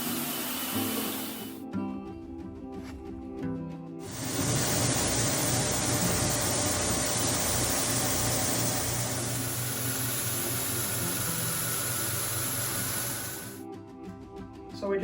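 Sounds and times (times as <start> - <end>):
floor sanding machine running: 0.0 - 1.6, 4.0 - 13.6.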